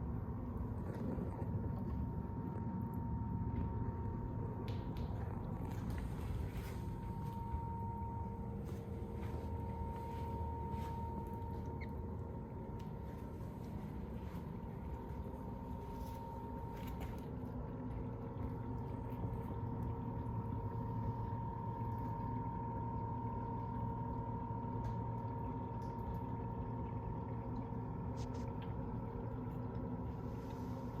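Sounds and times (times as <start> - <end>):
pump hum: 0.0 - 31.0
water running through drain pipes: 0.2 - 31.0
high whine: 1.6 - 18.2.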